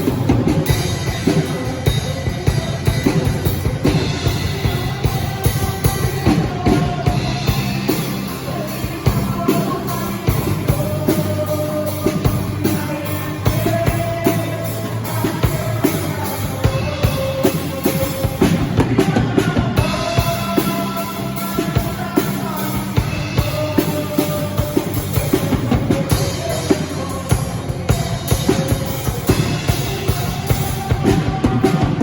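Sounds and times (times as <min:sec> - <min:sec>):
bass: 0:00.0 - 0:32.0
drum kit beat: 0:00.0 - 0:32.0
held melody line: 0:00.0 - 0:32.0.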